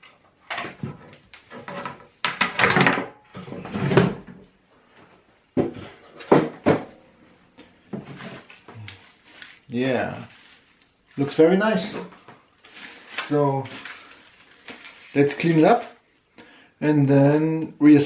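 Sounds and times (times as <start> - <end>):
plastic rustling: 7.7 - 16.4.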